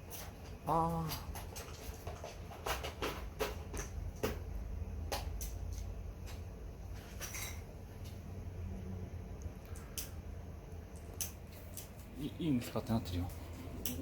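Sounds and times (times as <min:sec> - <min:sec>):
objects clicking and knocking: 0:00.0 - 0:08.1
low steady hum: 0:00.0 - 0:14.0.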